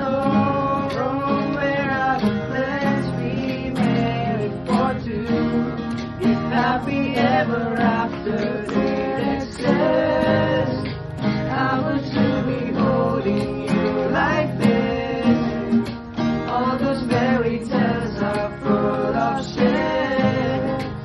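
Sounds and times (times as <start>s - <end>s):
person singing: 0.0s - 5.7s, 16.5s - 21.0s
acoustic guitar: 0.0s - 21.0s.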